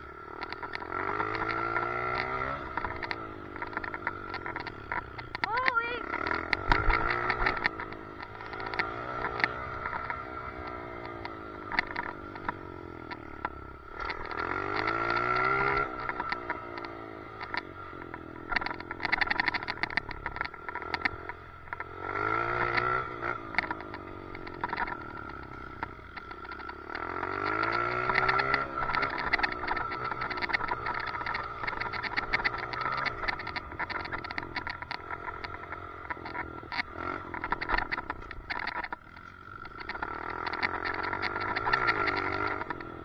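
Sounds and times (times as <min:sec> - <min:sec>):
dirt bike engine revving: 0:00.0 - 0:43.0
sharp rattling clicks: 0:00.1 - 0:43.0.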